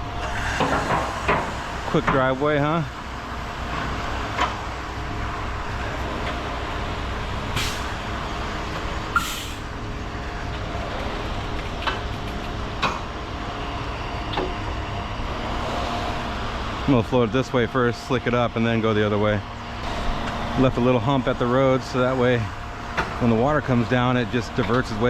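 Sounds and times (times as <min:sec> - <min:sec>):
diesel truck engine running: 0:00.0 - 0:25.0
air hissing: 0:00.2 - 0:02.1, 0:07.5 - 0:08.0, 0:09.1 - 0:09.7.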